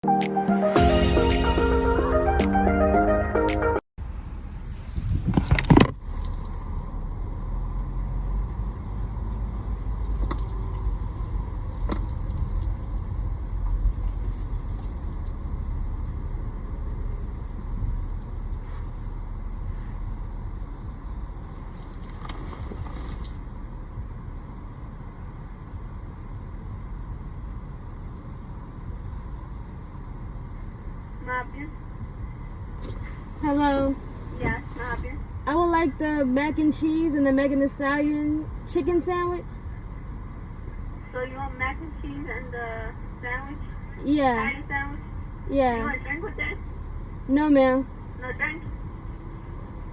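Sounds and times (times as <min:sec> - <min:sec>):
car engine running: 0:04.0 - 0:42.5
high jingling or clicking: 0:09.8 - 0:13.7, 0:21.6 - 0:23.5.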